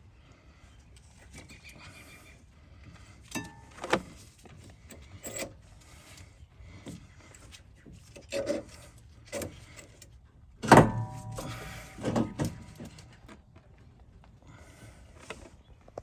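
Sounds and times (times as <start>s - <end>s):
metal tools knocking and scraping: 10.6s - 13.0s
loud metallic clank: 10.7s - 12.5s.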